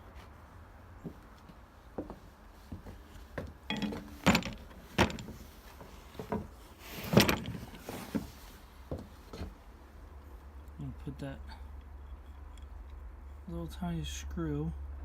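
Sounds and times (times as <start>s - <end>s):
metal parts knocking on workbench: 3.7s - 5.4s.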